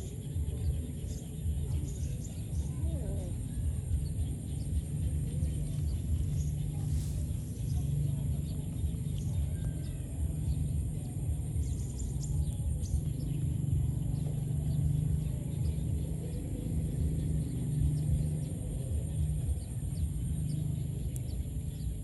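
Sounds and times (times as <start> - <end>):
faint bird chirps: 0.0 - 22.0
low rumble: 0.0 - 22.0.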